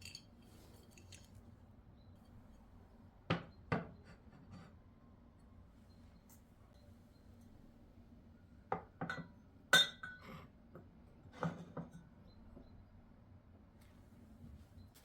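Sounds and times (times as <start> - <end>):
glassware clinking: 0.0 - 0.3, 9.0 - 10.4.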